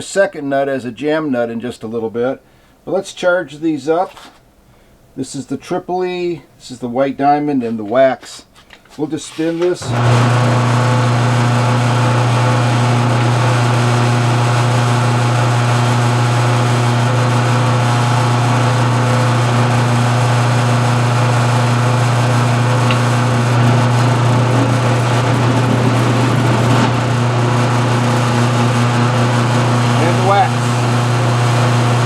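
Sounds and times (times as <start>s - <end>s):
lathe motor humming: 9.8s - 32.0s.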